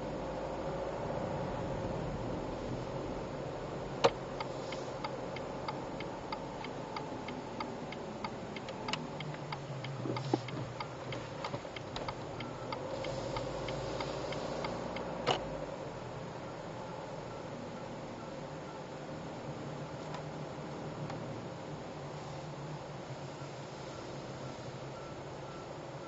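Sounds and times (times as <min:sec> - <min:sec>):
car ticking noise: 0:04.0 - 0:15.6.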